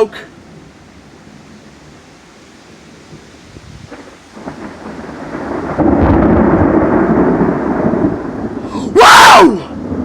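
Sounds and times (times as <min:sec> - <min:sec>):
steady rain: 0:00.0 - 0:10.0
thunder rumbling: 0:02.8 - 0:10.0.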